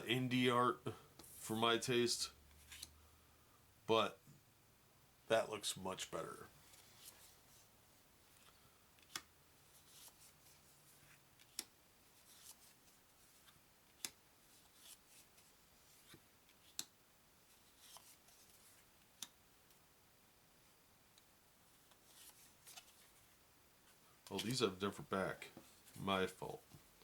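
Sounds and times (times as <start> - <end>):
cards rustling: 2.6 - 2.9, 8.3 - 16.8, 17.5 - 18.9, 21.8 - 23.4, 24.3 - 26.1.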